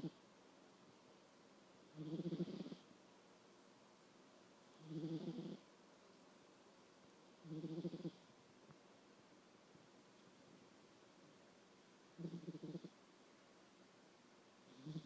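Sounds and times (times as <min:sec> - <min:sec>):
cat snoring: 0:01.9 - 0:02.9, 0:04.7 - 0:05.7, 0:07.4 - 0:08.3, 0:12.2 - 0:13.0, 0:14.7 - 0:15.0.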